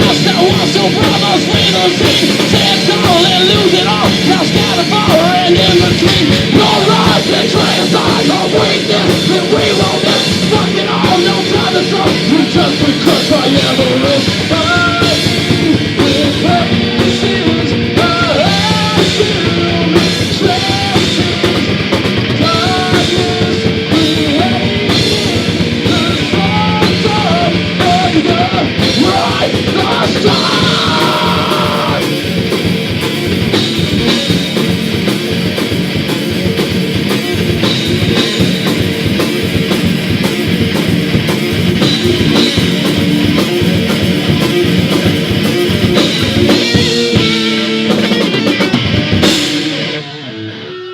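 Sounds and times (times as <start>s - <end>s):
sung and shouted vocals: 0.0s - 21.6s, 22.4s - 32.2s
drum kit: 0.0s - 50.6s
bass guitar: 0.0s - 50.9s
distorted electric guitars: 0.0s - 50.9s.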